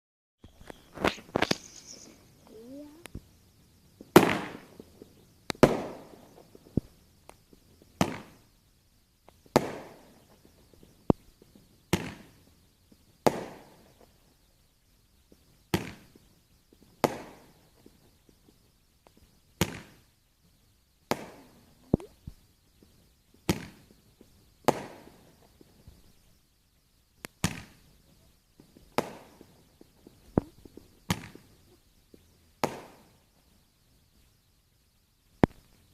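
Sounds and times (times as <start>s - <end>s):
fireworks bangs: 4.0s - 6.9s, 7.9s - 8.5s, 9.4s - 10.9s, 13.2s - 13.8s, 16.9s - 18.0s, 21.1s - 22.1s, 24.6s - 26.0s, 28.6s - 31.6s, 32.6s - 33.2s.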